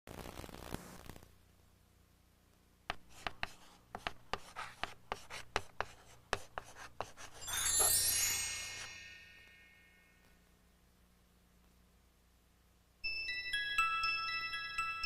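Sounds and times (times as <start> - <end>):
bright ringing chime: 7.4 - 10.3, 13.0 - 15.0.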